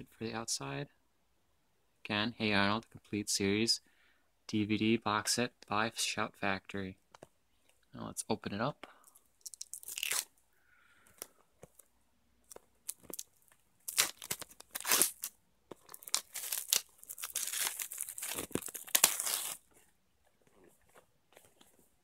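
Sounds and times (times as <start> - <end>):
plastic wrap tearing and crinkling: 9.4 - 10.3, 12.4 - 19.7.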